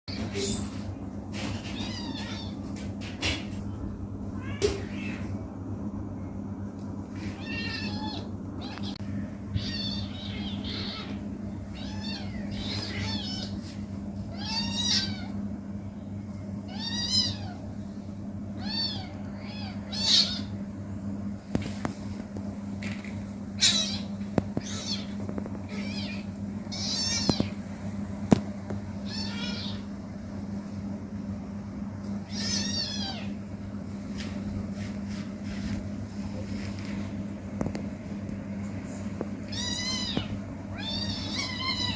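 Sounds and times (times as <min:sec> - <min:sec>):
steady low hum: 0:00.1 - 0:41.9
kitten mewing: 0:23.6 - 0:27.6.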